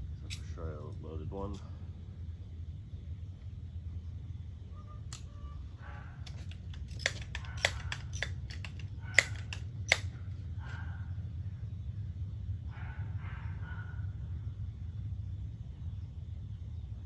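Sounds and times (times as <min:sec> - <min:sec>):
metallic clicks of pistol action: 0:06.2 - 0:10.1.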